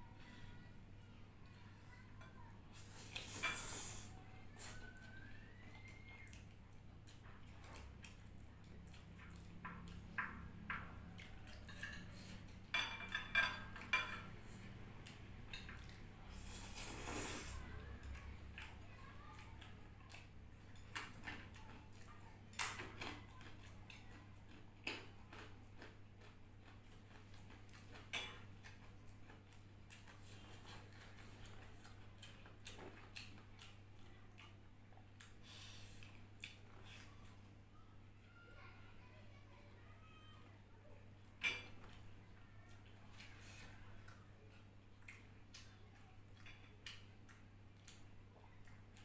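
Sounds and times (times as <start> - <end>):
utensils clinking against dishes: 11.6 - 14.4, 41.4 - 41.9
eating clicks and smacks: 19.4 - 35.4, 36.0 - 36.8, 44.0 - 49.0.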